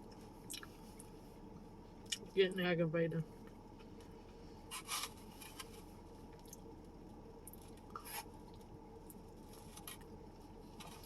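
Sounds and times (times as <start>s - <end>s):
person chewing food: 0.0s - 1.2s
low steady hum: 0.0s - 11.0s.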